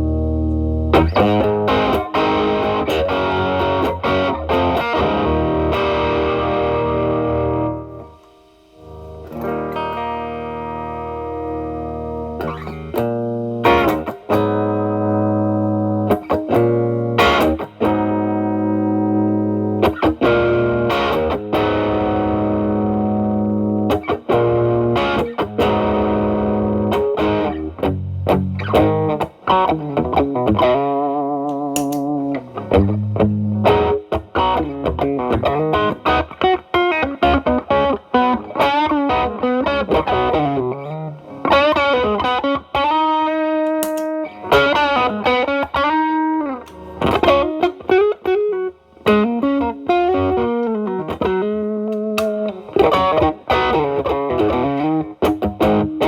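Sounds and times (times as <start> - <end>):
distorted electric guitar: 0.0 - 56.0.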